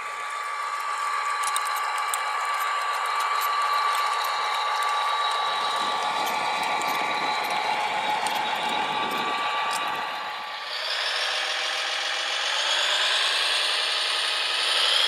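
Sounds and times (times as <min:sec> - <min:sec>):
gears clicking: 0:00.0 - 0:11.7
low grinding noise: 0:00.0 - 0:15.0
small electric motor whining: 0:00.0 - 0:15.0.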